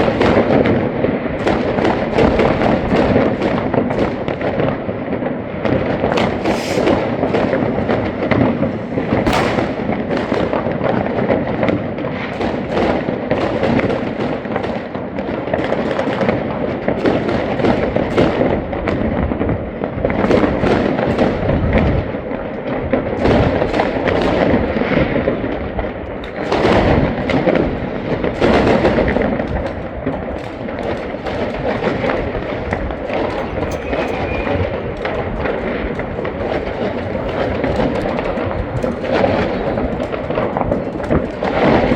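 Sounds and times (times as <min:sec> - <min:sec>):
fireworks barrage bangs and crackling: 0:00.0 - 0:41.9.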